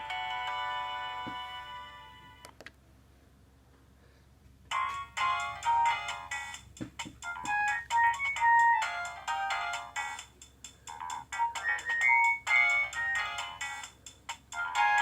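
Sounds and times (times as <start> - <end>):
mobile phone ringtone: 7.2 - 10.1, 10.9 - 13.8, 14.6 - 15.0.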